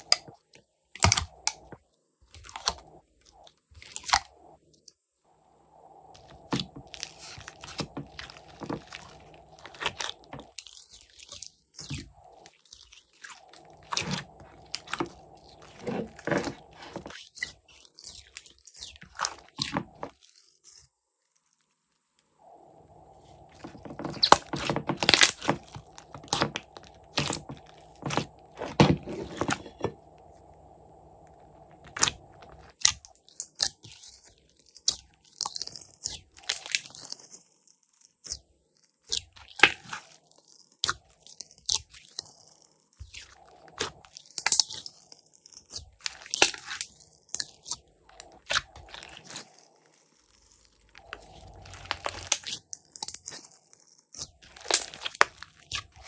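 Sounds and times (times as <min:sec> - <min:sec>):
slime squeezed crackling and popping: 0:23.4 - 0:28.8, 0:39.0 - 0:56.0.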